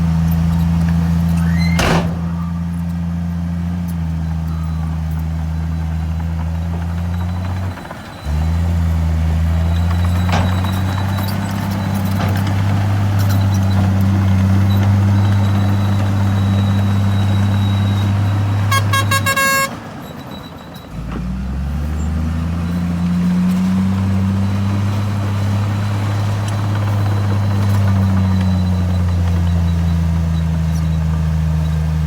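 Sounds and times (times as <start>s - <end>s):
heavy diesel engine running: 0.0s - 32.0s
horn toot: 18.6s - 19.8s.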